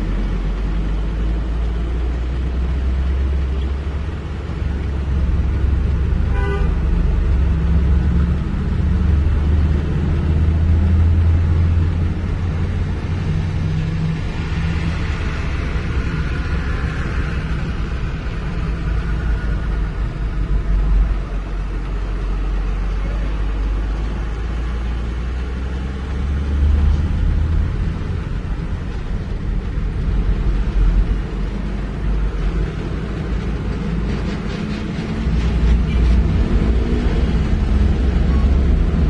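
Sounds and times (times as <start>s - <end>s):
diesel engine rumbling: 0.0s - 39.0s
short horn toot: 6.3s - 6.8s.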